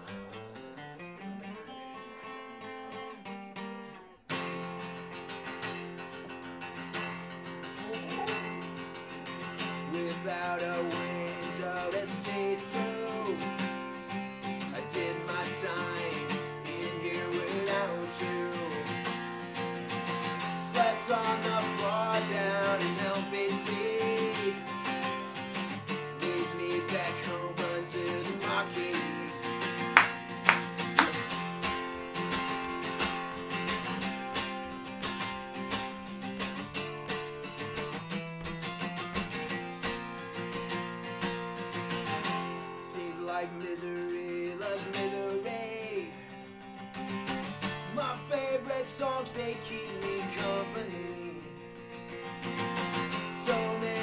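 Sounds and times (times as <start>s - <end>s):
acoustic guitar strumming: 0.0s - 54.0s
plucked strings: 25.4s - 42.5s.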